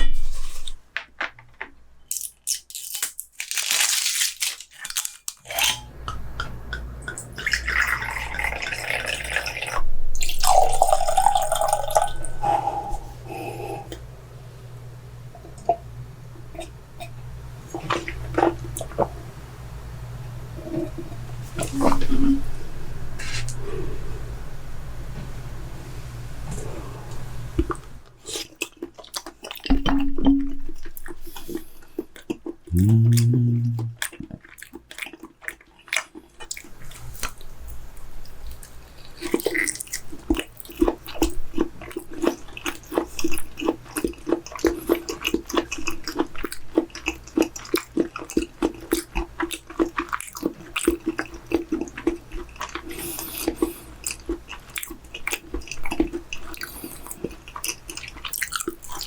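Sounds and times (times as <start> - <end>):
wet chewing: 27.6 - 29.8, 30.7 - 59.0
person humming: 32.7 - 34.0.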